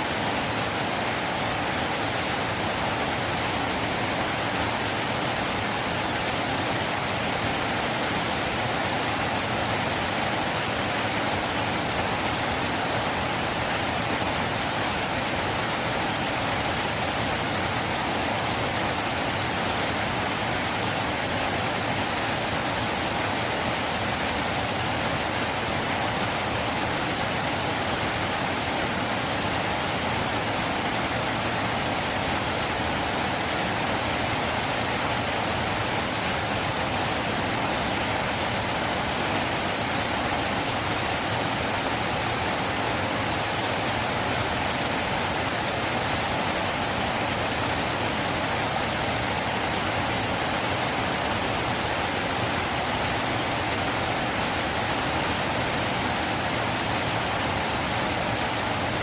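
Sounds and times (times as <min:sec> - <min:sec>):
river water flowing: 0:00.0 - 0:59.0.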